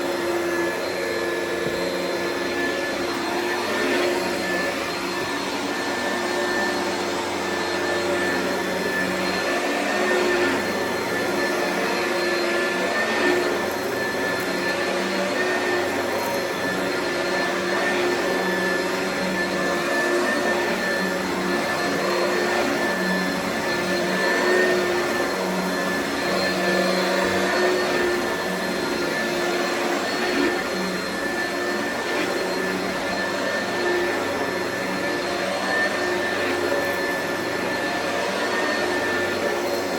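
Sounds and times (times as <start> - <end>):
vacuum cleaner motor whine: 0.0 - 39.9.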